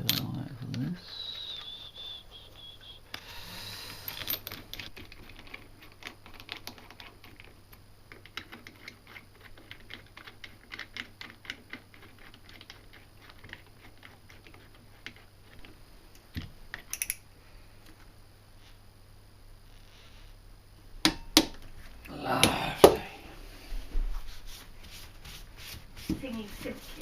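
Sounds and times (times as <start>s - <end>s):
tools and bolts clicking: 0.0s - 0.9s, 16.7s - 17.2s.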